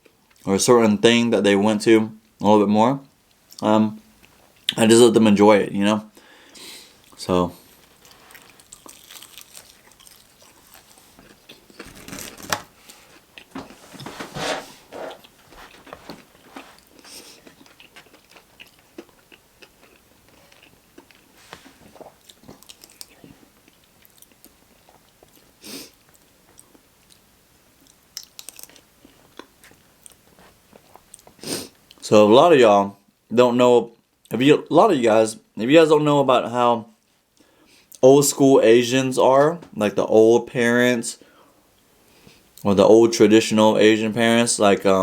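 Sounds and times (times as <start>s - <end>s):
person chewing crunchy food: 7.8s - 14.0s, 15.0s - 27.2s, 27.8s - 32.0s.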